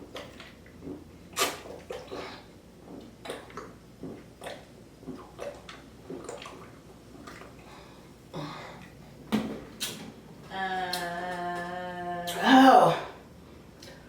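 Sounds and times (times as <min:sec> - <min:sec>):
wet liquid sounds: 0:00.0 - 0:09.0
person gulping a drink: 0:00.0 - 0:09.1.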